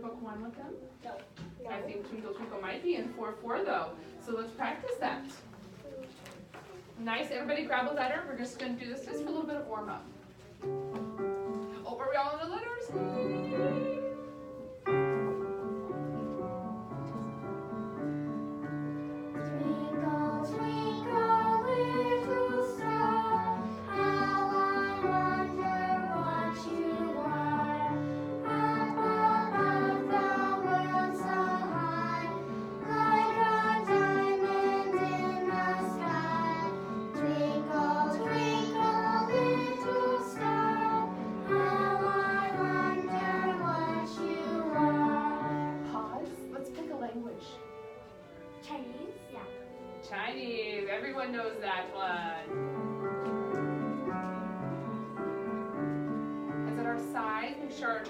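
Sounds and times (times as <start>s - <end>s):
piano accompaniment: 9.2s - 58.0s
children singing: 12.9s - 15.2s, 19.1s - 46.6s.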